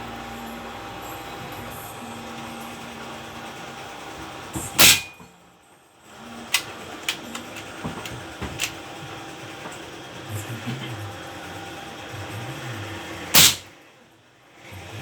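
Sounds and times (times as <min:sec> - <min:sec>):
air rifle shot: 0:04.8 - 0:05.1, 0:13.4 - 0:13.6.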